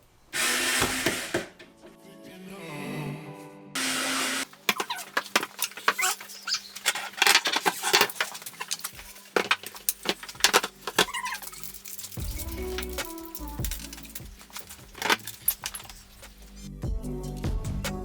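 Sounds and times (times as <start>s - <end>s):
cordless drill whirring: 0.4s - 1.6s, 3.8s - 4.5s
small metallic clicks and clinks: 6.8s - 16.7s.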